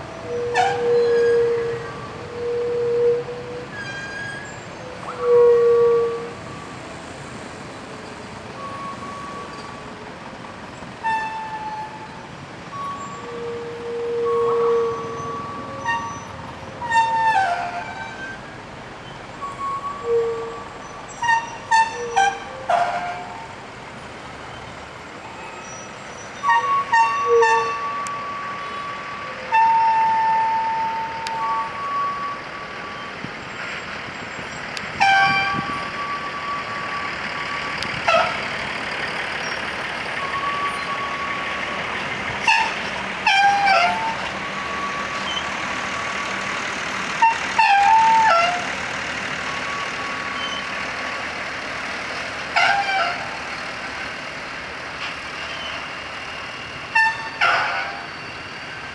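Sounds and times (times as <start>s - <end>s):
musical bus horns: 0.0s - 58.9s
traffic hum: 0.0s - 58.9s.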